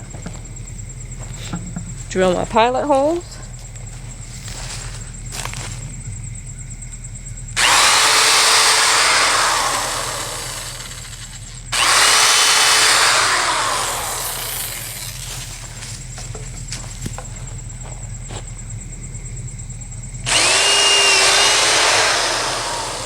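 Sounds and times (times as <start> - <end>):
power drill boring into wood: 7.6 - 15.3, 20.3 - 23.0.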